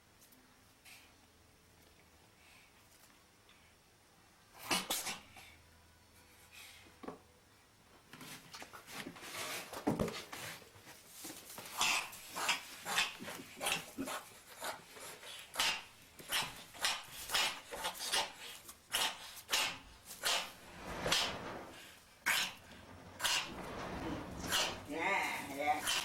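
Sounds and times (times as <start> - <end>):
cat sneezing: 4.6 - 5.5, 15.5 - 20.6.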